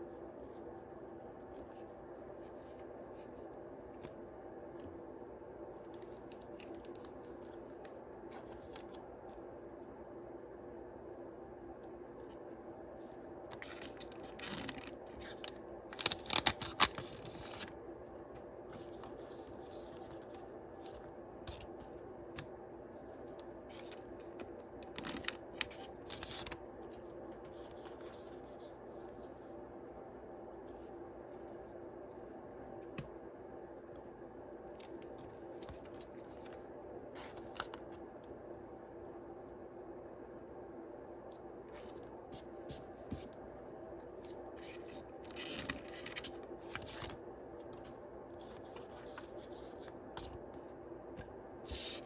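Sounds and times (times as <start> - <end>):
faint steady hum: 0.0 - 52.0
foil wrappers crinkling and tearing: 13.5 - 17.7, 24.8 - 26.6, 44.6 - 47.2.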